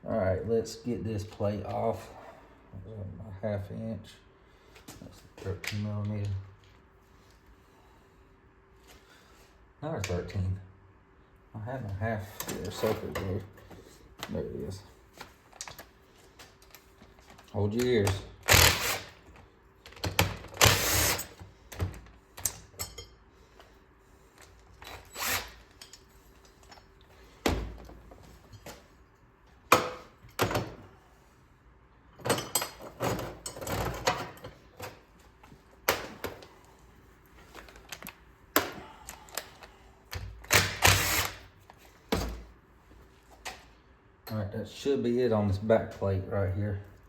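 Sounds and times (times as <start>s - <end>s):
impact wrench bursts: 18.4s - 19.2s, 20.4s - 21.4s, 24.9s - 25.8s, 40.5s - 41.5s.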